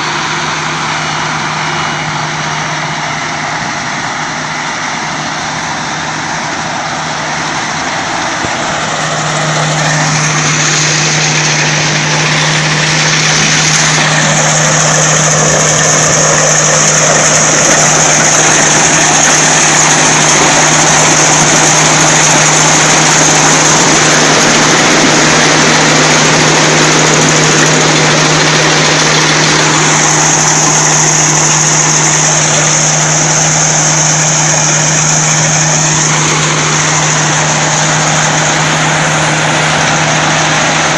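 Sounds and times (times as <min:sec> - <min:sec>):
harvesting machine engine hum: 0:00.0 - 0:40.9
high machine whine: 0:00.0 - 0:40.9
mechanical rush: 0:00.0 - 0:40.9.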